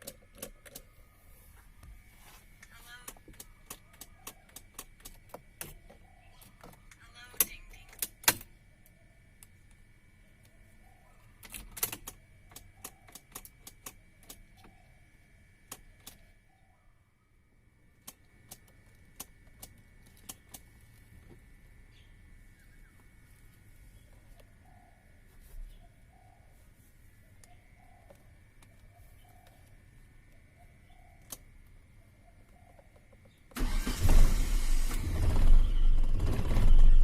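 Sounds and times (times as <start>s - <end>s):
sharp clicks: 0.0s - 0.9s, 3.0s - 8.5s, 11.4s - 14.7s, 18.0s - 20.7s.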